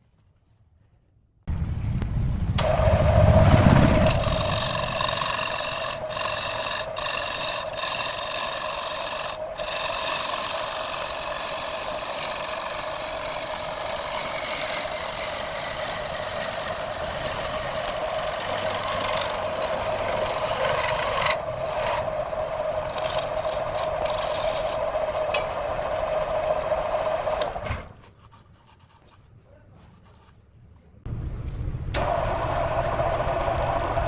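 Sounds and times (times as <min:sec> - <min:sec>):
wood lathe whining: 0:02.6 - 0:27.9, 0:32.0 - 0:34.0
tool rasping against wood: 0:04.0 - 0:22.0, 0:22.8 - 0:24.8.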